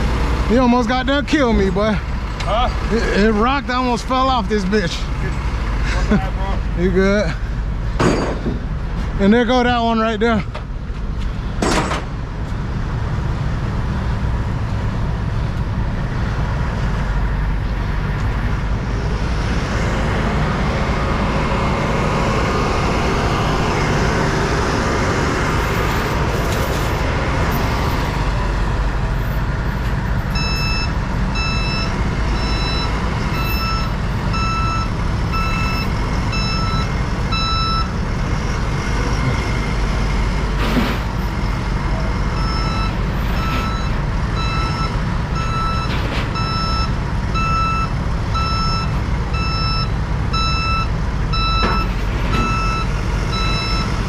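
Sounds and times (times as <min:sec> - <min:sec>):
diesel engine running: 0:00.0 - 0:54.0
back-up alarm beeps: 0:30.4 - 0:39.4, 0:42.4 - 0:53.9.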